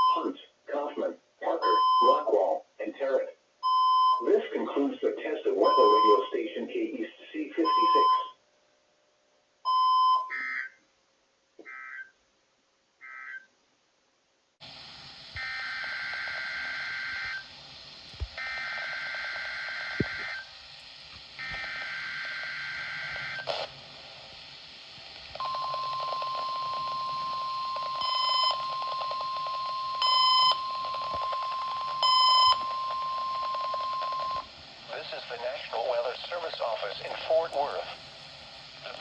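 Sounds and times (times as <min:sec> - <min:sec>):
static hiss: 0:04.3 - 0:08.0, 0:14.2 - 0:39.0
steady alarm tone: 0:15.3 - 0:17.6, 0:18.3 - 0:20.5, 0:21.4 - 0:23.5, 0:25.3 - 0:34.5
warbling data tones: 0:25.3 - 0:37.9
short loud beeps: 0:25.4 - 0:34.4.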